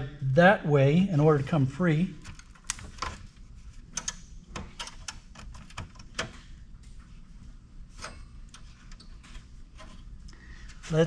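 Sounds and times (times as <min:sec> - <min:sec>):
computer parts clicking and clacking: 0:03.9 - 0:06.5.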